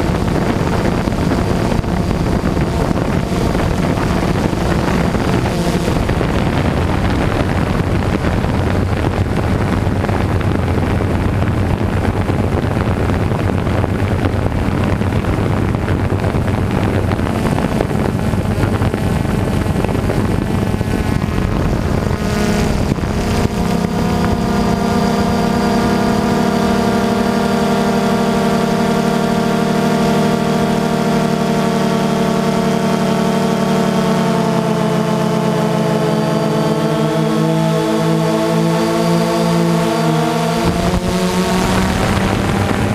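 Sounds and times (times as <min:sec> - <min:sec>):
drone of even tones: 0:00.0 - 0:11.9, 0:15.4 - 0:42.9
engine running: 0:00.0 - 0:42.9
wind on microphone: 0:00.0 - 0:42.9.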